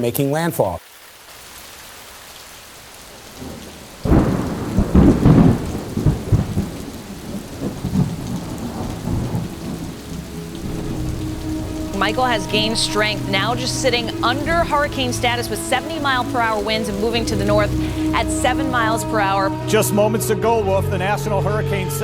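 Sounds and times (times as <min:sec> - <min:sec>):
steady rain: 0:00.3 - 0:19.9
thunderclap with deep rumble: 0:03.1 - 0:19.8.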